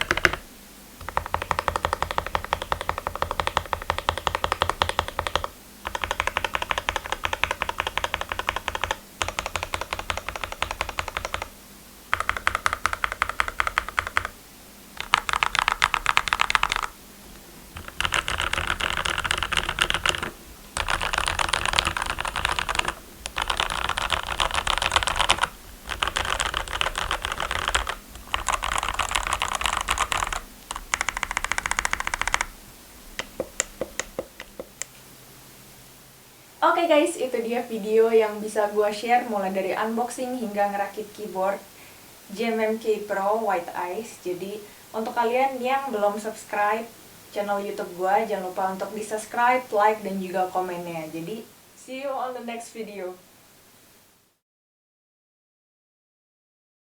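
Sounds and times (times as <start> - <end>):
mechanical keyboard typing: 0.0 - 14.4, 15.0 - 17.0, 17.7 - 32.6, 33.2 - 34.9.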